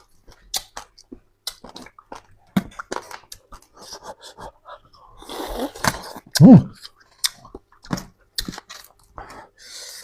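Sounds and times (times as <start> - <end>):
wet chewing: 0.0 - 4.1
noisy breath out: 9.2 - 10.0.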